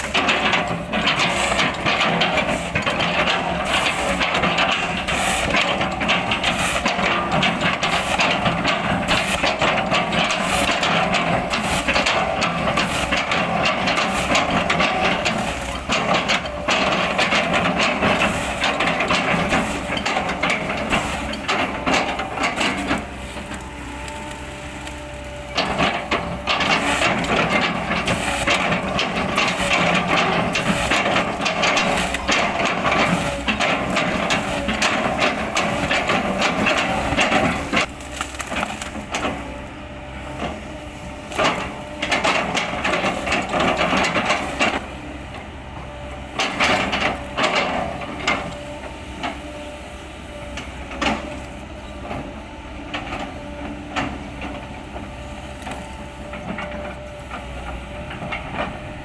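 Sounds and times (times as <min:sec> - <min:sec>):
excavator diesel engine: 0:00.0 - 0:59.0.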